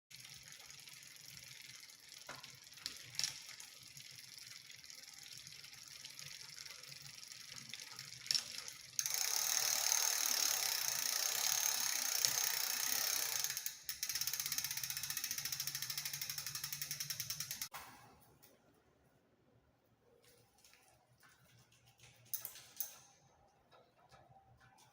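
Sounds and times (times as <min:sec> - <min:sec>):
bike drivetrain rattling: 0:00.1 - 0:17.7.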